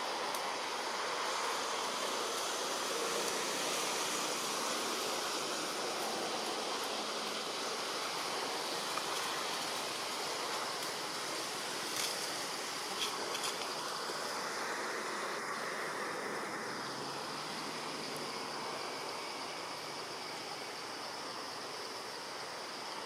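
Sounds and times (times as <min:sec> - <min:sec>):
steady rushing noise: 0:00.0 - 0:23.0.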